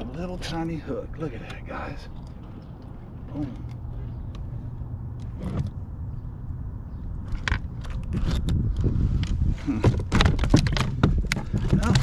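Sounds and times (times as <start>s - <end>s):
wind rumbling on microphone: 0.0s - 12.0s
clicks and scrapes: 7.2s - 12.0s.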